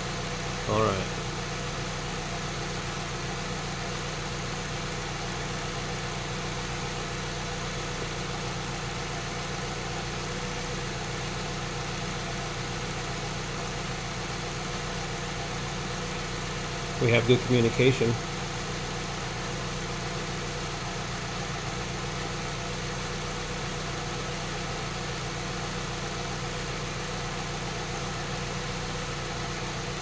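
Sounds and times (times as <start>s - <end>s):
car engine idling: 0.0s - 30.0s.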